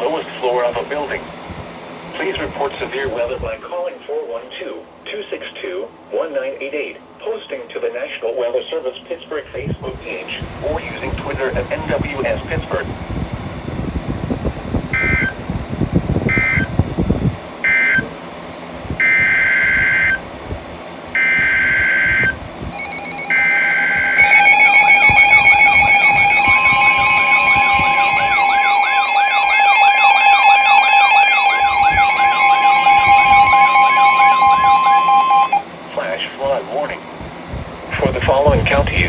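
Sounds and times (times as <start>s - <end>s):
two-tone alarm: 14.9s - 15.4s, 16.3s - 16.7s, 17.6s - 18.1s, 19.0s - 20.2s, 21.2s - 35.7s
wavering siren-like tone: 14.9s - 15.4s, 16.3s - 16.7s, 17.6s - 18.1s, 19.0s - 20.2s, 21.2s - 35.7s
shrill digital data tones: 21.2s - 35.6s
single steady tone: 21.2s - 35.6s.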